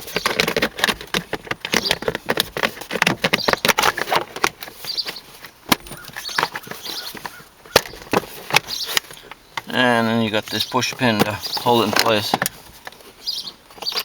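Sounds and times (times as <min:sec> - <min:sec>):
sharp knocks: 0:05.7 - 0:06.5
plastic trim clicks and rattles: 0:11.0 - 0:12.6.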